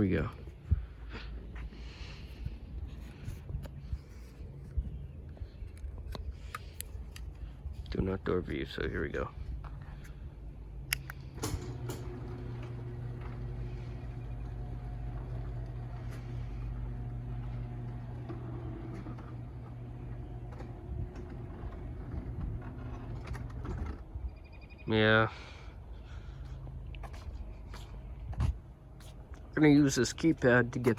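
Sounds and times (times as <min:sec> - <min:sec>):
garage door motor hum: 0:10.0 - 0:24.5
garage door opener clicks: 0:10.9 - 0:24.1.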